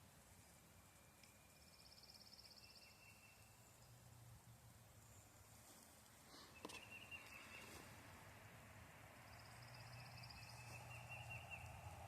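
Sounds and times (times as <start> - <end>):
high chirping birds or insects: 0.4 - 4.0, 6.6 - 7.8, 9.2 - 12.0
faint click: 1.2 - 1.4.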